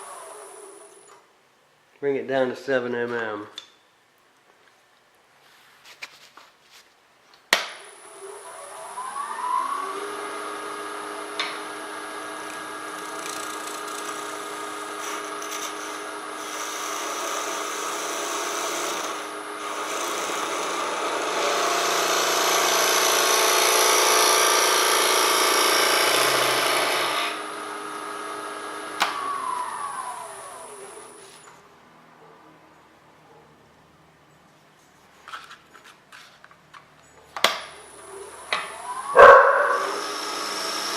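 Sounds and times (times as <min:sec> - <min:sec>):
lathe motor whine: 0:07.9 - 0:31.4, 0:37.9 - 0:40.9
tool cutting spinning wood: 0:08.0 - 0:31.4, 0:37.9 - 0:40.9.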